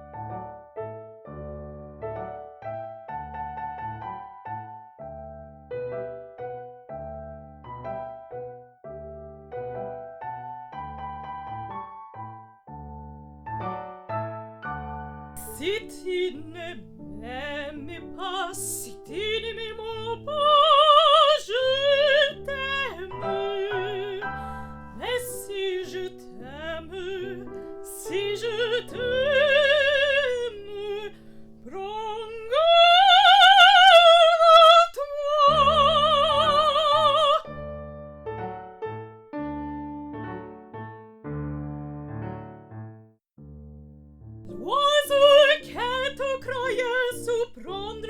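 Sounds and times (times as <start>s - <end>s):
piano accompaniment: 0.0s - 48.0s
woman singing with vibrato: 15.4s - 37.6s, 44.5s - 48.0s.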